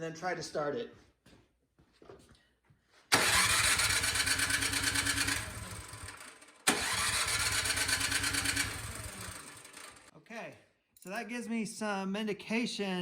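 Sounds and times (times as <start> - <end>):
engine cranking without starting: 3.1 - 10.1.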